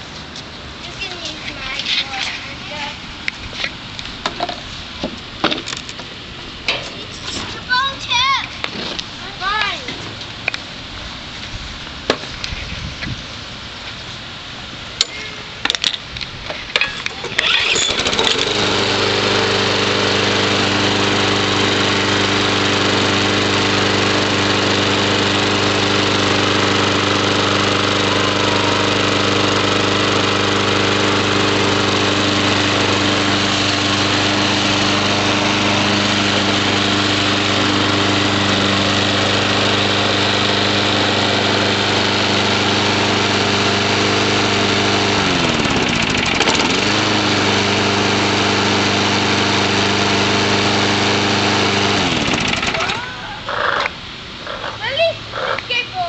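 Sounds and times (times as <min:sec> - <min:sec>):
lawn mower engine running: 0:13.4 - 0:56.0.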